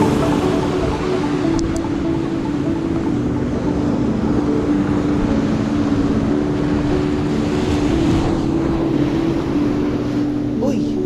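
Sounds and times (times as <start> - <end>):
wind rushing: 0.0 - 10.8
music of held low notes: 0.0 - 11.0
ocean surf: 0.0 - 11.0.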